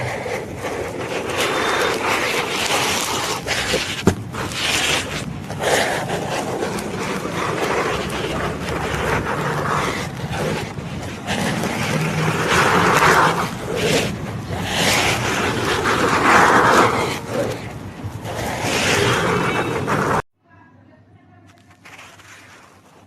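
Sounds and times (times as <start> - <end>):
blade cutting sand: 0.0 - 20.2.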